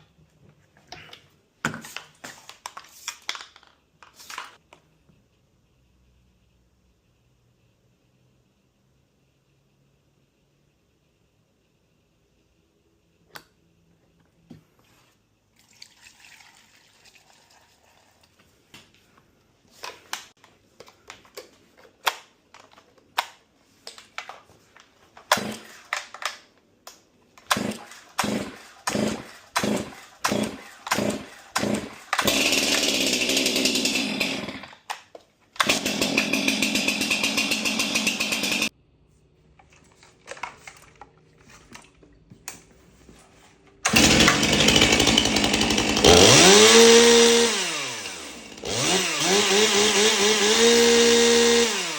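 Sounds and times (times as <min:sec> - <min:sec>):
chainsaw starter cord pulls: 0:25.2 - 0:26.3, 0:27.4 - 0:38.7, 0:43.8 - 0:51.9
chainsaw engine running loud: 0:29.0 - 0:34.5, 0:35.7 - 0:38.7, 0:43.9 - 0:51.9.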